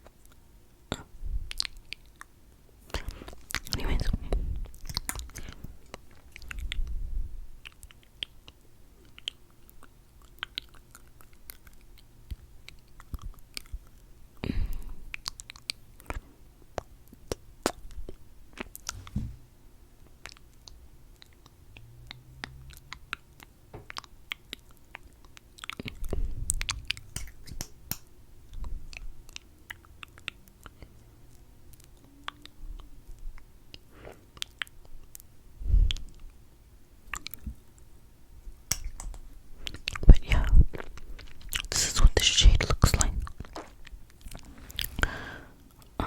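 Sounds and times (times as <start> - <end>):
sticky lip smacks and clicks: 3.0 - 6.9, 7.6 - 14.0, 20.2 - 32.9, 37.1 - 37.6, 38.6 - 45.0.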